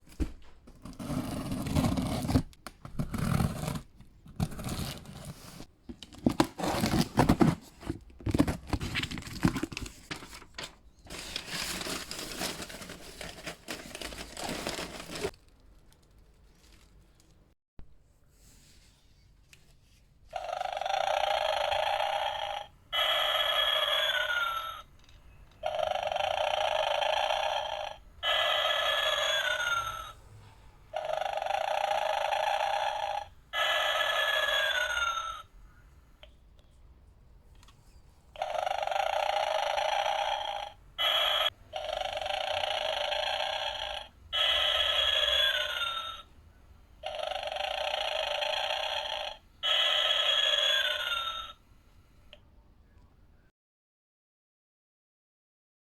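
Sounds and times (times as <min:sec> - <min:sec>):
toy snoring with whistling breath: 0:20.9 - 0:24.9, 0:47.1 - 0:51.6.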